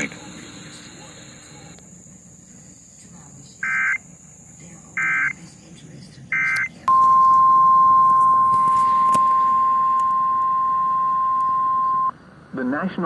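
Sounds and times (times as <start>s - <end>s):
steady alert beep tone: 3.6s - 4.0s, 6.4s - 12.1s.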